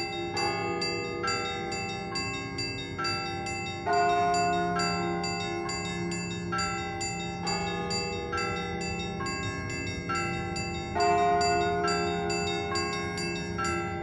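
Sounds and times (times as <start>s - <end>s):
church bells ringing: 0.0s - 14.0s.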